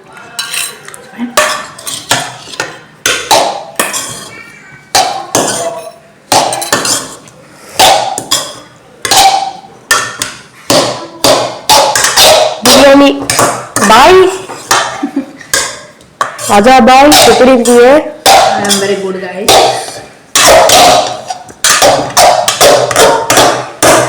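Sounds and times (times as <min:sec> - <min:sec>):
metal utensil clanking on cookware: 0:00.4 - 0:04.4, 0:05.0 - 0:07.2.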